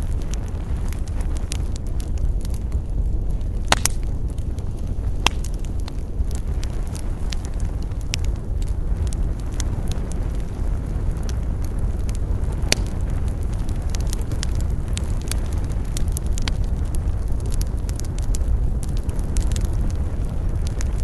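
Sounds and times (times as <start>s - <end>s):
campfire flames rumbling: 0.0s - 21.0s
fire crackling: 0.0s - 21.0s
loud fire pop: 3.5s - 4.3s, 5.1s - 5.7s, 12.5s - 13.2s.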